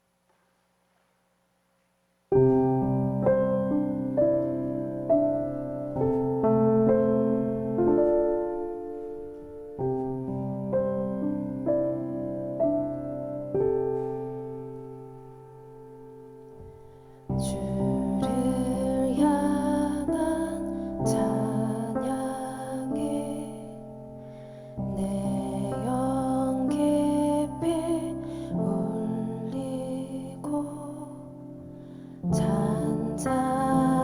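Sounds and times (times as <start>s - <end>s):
gentle piano chords: 2.3s - 34.0s.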